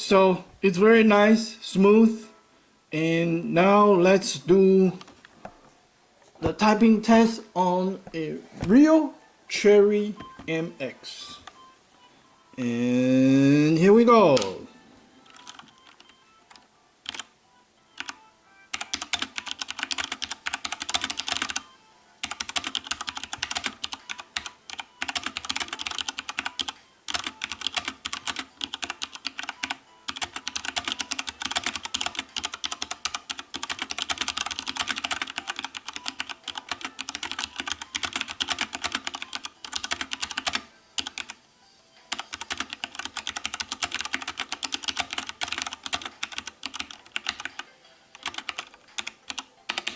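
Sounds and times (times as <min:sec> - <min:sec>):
mechanical keyboard typing: 0:14.2 - 0:14.6, 0:15.2 - 0:17.3, 0:18.0 - 0:41.4, 0:42.1 - 0:49.9.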